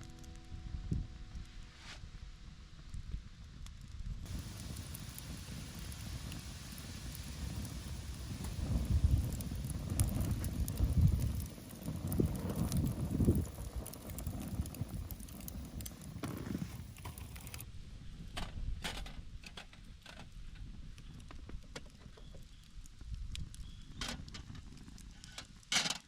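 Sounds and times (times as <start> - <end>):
low rumbling: 4.1 - 17.6.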